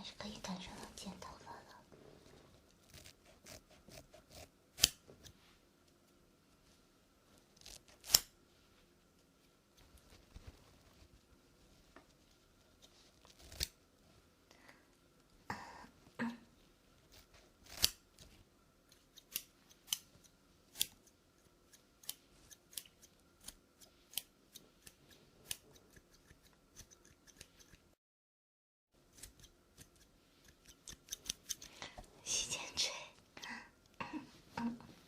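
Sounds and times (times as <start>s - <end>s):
scissors snipping hair: 2.8s - 5.3s, 7.6s - 8.3s, 13.3s - 13.8s, 17.1s - 18.0s, 18.9s - 27.8s, 29.1s - 31.8s.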